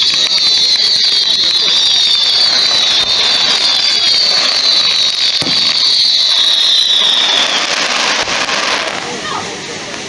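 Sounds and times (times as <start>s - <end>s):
firework whistles: 0.0s - 10.0s
fireworks crackling: 0.0s - 10.0s.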